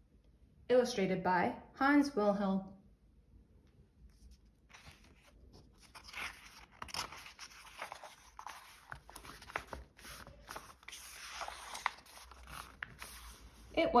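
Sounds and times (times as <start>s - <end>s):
paper rustling and crinkling: 4.1s - 13.7s.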